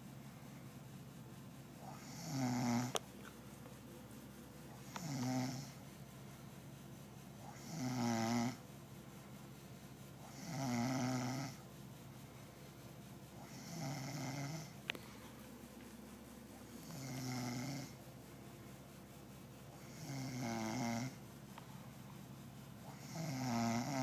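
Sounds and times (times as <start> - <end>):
person snoring: 1.8 - 3.0, 4.8 - 5.8, 7.5 - 8.6, 10.3 - 11.6, 13.4 - 14.8, 16.8 - 18.0, 19.8 - 21.2, 22.9 - 24.0.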